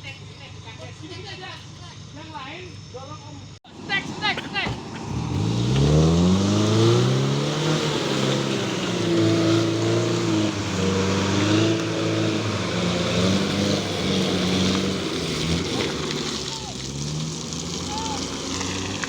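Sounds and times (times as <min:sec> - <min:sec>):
engine revving: 0:04.0 - 0:19.0.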